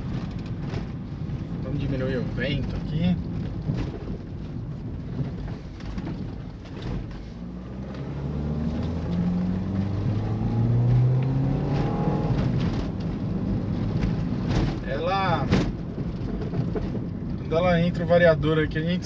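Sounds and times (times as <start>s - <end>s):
tyre and road rumble: 0.0s - 19.0s
car engine accelerating: 5.0s - 14.9s.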